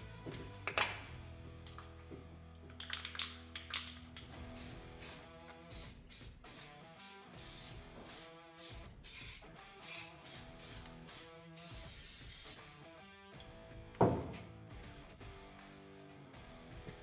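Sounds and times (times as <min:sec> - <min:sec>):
guitar music: 0:04.3 - 0:11.8, 0:12.6 - 0:17.0
spray paint hissing: 0:04.6 - 0:12.7.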